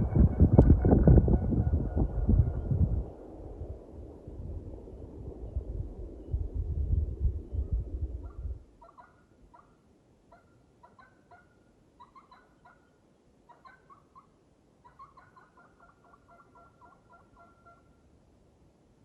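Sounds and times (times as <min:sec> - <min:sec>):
distant turkey calling: 0:08.2 - 0:18.0.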